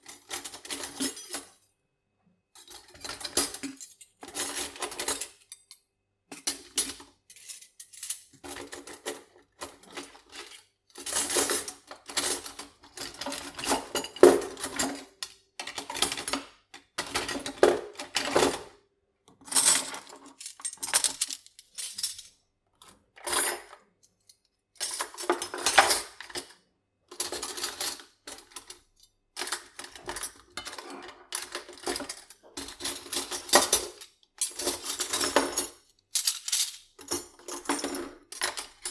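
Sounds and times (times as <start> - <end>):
metal cutlery clinking: 0.1 - 1.6, 2.6 - 16.4, 19.4 - 22.3, 23.2 - 26.4, 27.2 - 38.9.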